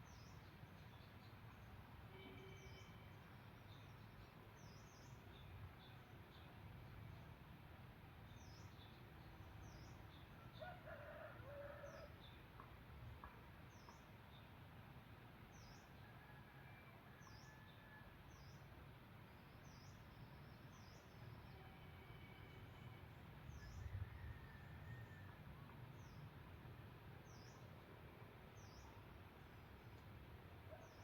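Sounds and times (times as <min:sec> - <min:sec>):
distant rooster crow: 0:10.5 - 0:12.3, 0:16.0 - 0:18.2, 0:23.6 - 0:25.7.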